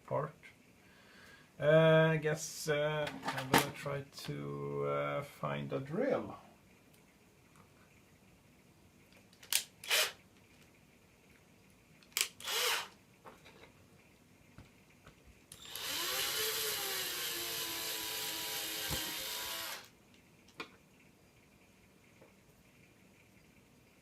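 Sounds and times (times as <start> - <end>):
power drill motor running: 9.8 - 10.2, 12.2 - 13.0, 15.6 - 19.9.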